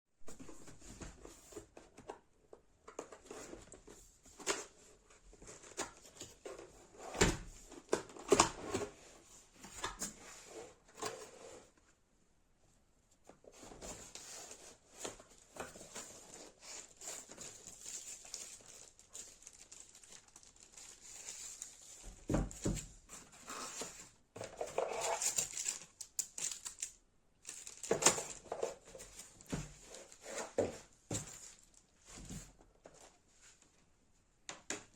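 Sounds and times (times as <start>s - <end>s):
packaging rustling and crinkling: 13.5s - 33.1s.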